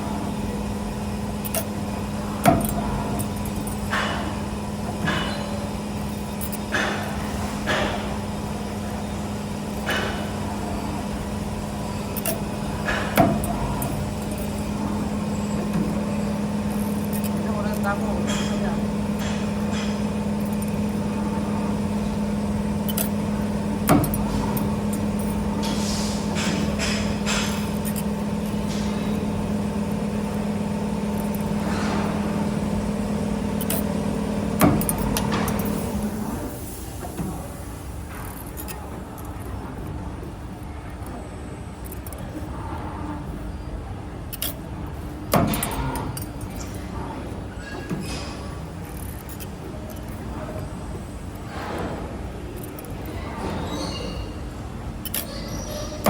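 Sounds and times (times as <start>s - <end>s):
machine mechanical hum: 0.0s - 56.0s
hiss: 25.6s - 26.4s.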